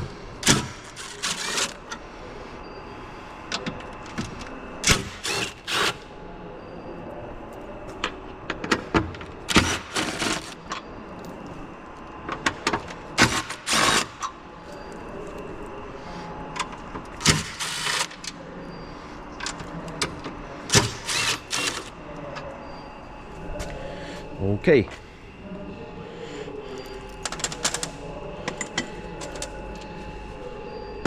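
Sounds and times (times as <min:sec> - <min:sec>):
hand tools clicking and rasping: 0:20.7 - 0:21.9.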